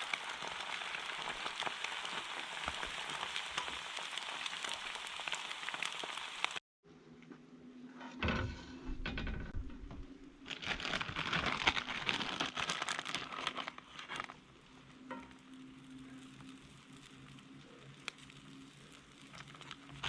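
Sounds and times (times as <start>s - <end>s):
crinkling and light clattering: 8.0s - 20.0s.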